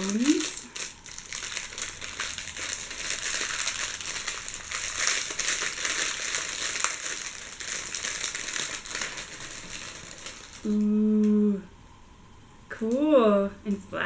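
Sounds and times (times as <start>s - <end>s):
wrapping crumpled and rustled: 0.0s - 11.2s.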